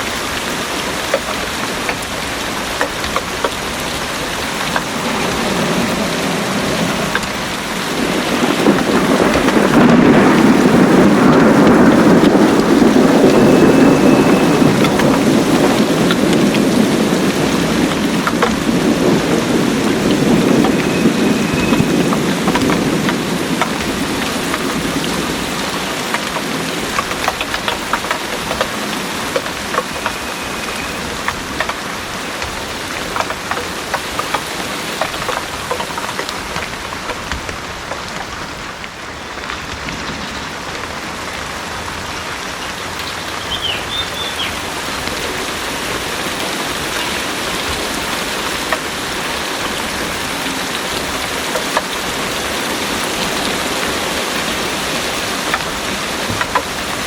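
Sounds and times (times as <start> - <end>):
heavy rain falling: 0.0 - 57.0
raindrops ticking close by: 0.0 - 57.0
low rumble of thunder: 2.7 - 33.5.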